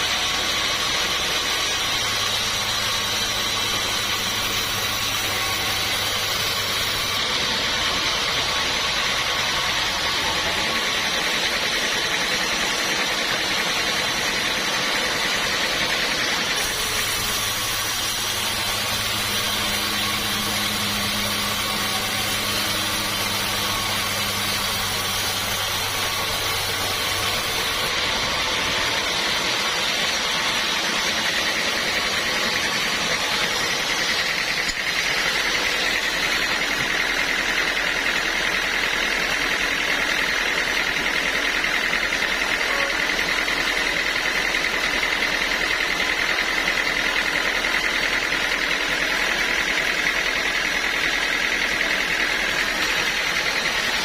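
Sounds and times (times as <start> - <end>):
saw machinery hissing: 0.0 - 54.0
low motor hum: 15.2 - 38.8.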